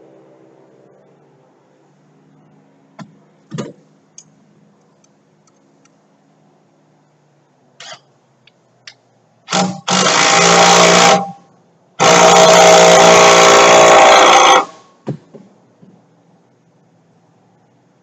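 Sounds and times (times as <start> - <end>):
power tool whining: 9.5 - 14.8.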